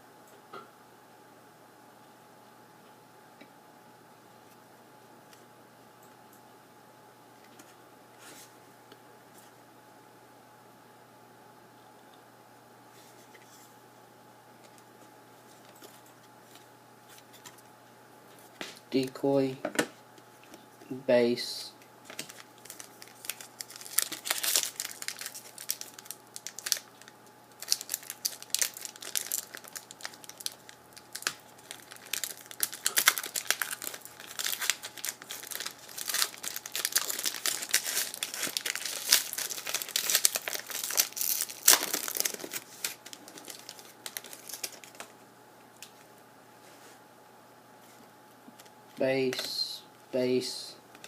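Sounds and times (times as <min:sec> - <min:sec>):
card packaging crinkling: 0:22.0 - 0:45.2.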